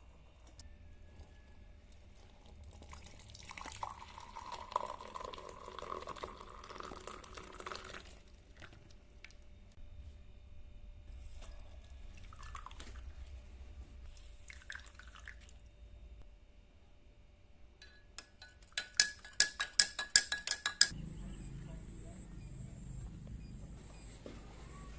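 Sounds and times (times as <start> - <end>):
spoon clinking in a glass: 17.8 - 21.0.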